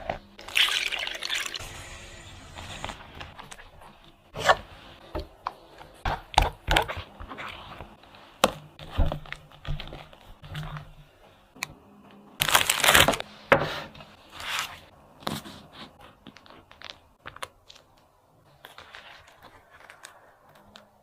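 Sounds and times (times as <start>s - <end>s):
crinkling and tearing: 12.4s - 13.2s.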